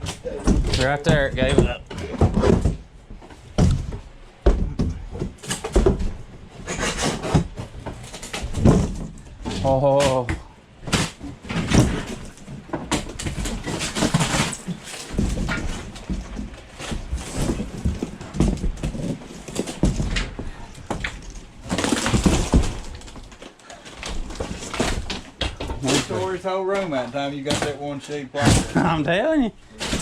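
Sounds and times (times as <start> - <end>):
knocks and cracking: 0.0 - 30.0
wood being pried and torn off: 3.6 - 26.3.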